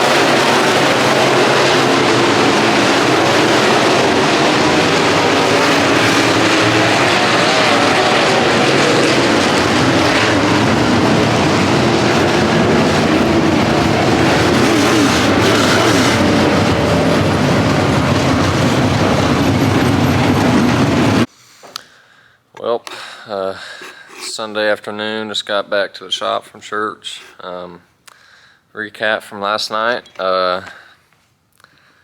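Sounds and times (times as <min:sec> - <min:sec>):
race car engine running hard: 0:00.0 - 0:21.3.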